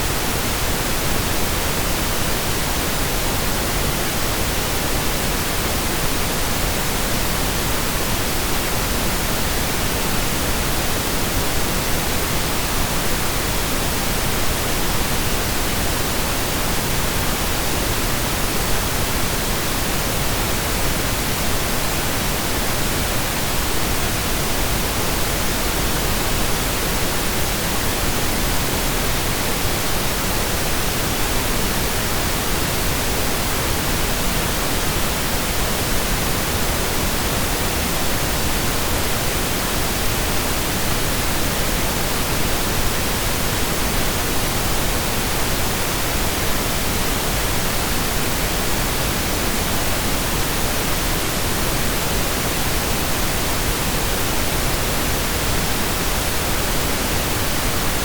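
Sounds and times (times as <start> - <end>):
pink noise hiss: 0.0 - 58.0.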